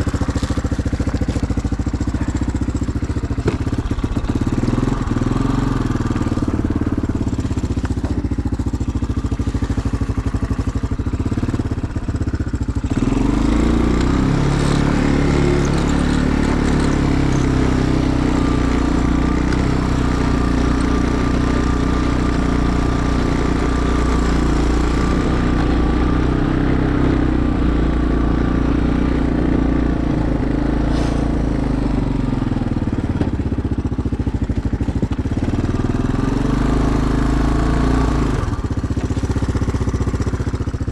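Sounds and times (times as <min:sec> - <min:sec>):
small engine running: 0:00.0 - 0:40.9.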